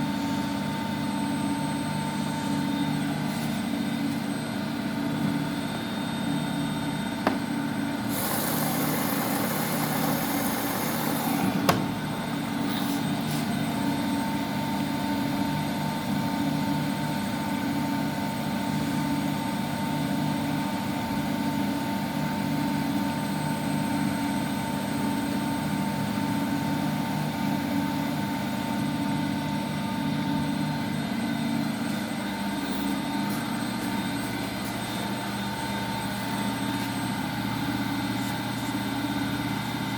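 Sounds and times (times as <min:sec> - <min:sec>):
washing machine motor hum: 0:00.0 - 0:16.4.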